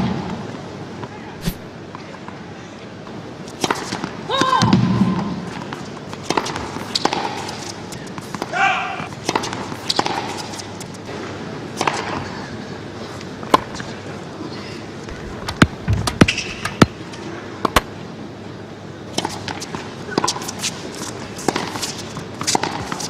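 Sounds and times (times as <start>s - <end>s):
stadium crowd ambience: 0.0s - 23.0s
tennis ball impacts: 3.5s - 12.3s, 15.1s - 18.0s, 19.1s - 23.0s.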